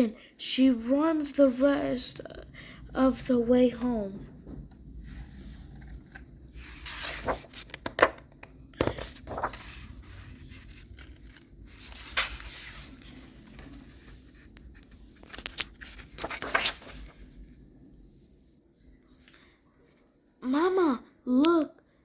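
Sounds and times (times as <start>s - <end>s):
book pages rustling: 3.7s - 17.5s.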